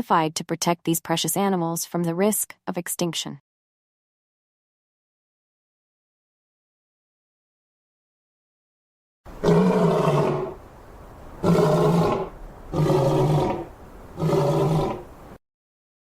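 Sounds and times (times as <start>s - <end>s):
lion roaring: 9.3s - 10.6s, 11.4s - 15.4s.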